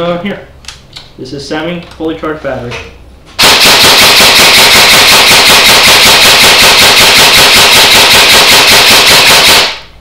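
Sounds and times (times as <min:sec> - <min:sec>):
airsoft gun full-auto burst: 0:03.4 - 0:09.9.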